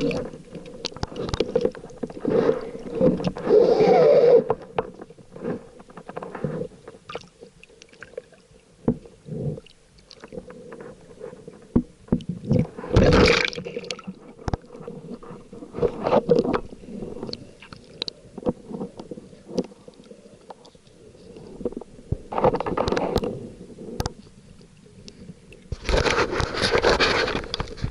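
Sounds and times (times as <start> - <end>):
underwater clicks and knocks: 0.0 - 3.4, 4.5 - 23.4, 24.0 - 24.3
rushing gurgling water: 0.0 - 4.8, 12.5 - 14.8.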